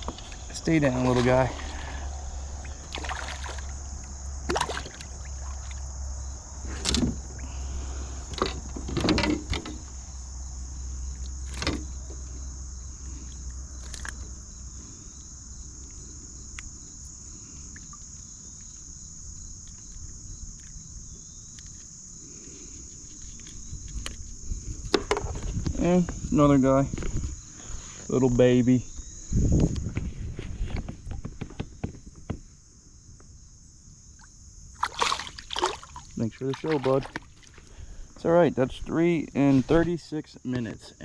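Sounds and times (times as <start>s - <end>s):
low steady hum: 0.0s - 24.9s, 33.6s - 38.2s
insects droning: 0.0s - 41.0s
sharp knocks or splashes: 2.8s - 3.7s, 4.4s - 5.8s, 34.8s - 37.6s.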